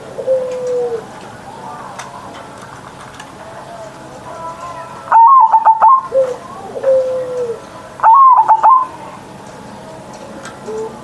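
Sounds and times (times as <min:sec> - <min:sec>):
low drawn-out dove coo: 0:00.0 - 0:01.1, 0:05.1 - 0:08.9, 0:10.7 - 0:11.0
dove song staccato notes: 0:05.1 - 0:08.9.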